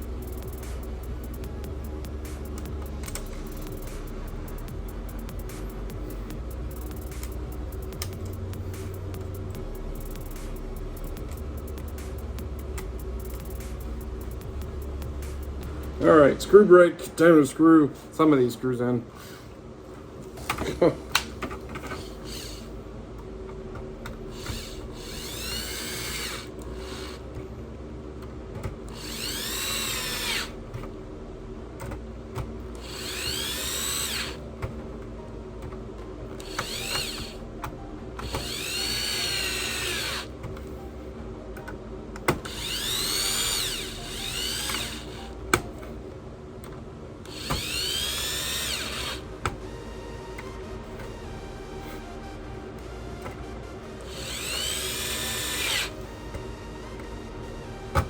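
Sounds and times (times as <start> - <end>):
electric screwdriver whining: 21.2 - 22.7, 24.3 - 27.3, 28.9 - 30.6, 32.7 - 34.4, 36.4 - 37.5, 38.2 - 40.3, 42.3 - 45.7, 47.3 - 49.6, 54.0 - 58.0.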